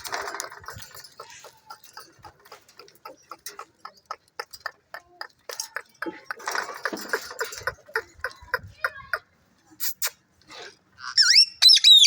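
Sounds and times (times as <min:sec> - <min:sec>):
parrot chirps: 0:11.0 - 0:12.0.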